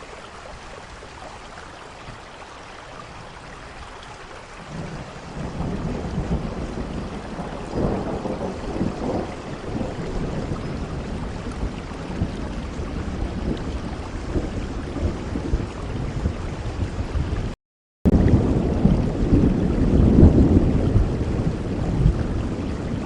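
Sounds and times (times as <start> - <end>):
heavy rain: 0.0 - 23.0
low thunder rumbling: 4.6 - 23.0.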